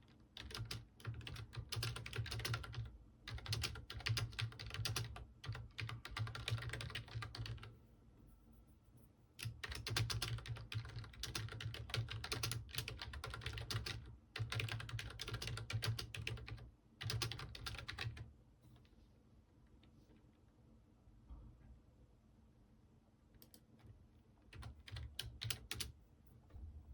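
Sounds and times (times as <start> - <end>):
computer keyboard typing: 0.0 - 7.7, 9.4 - 18.3, 24.5 - 26.0.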